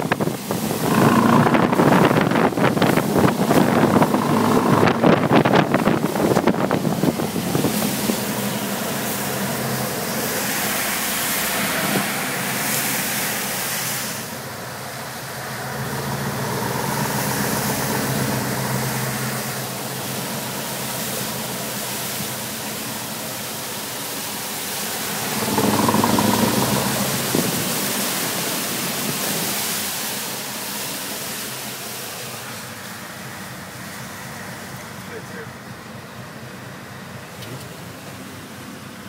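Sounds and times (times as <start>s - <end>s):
steady rushing hiss: 0.0s - 37.2s
car engine running: 0.3s - 7.5s, 24.7s - 28.9s.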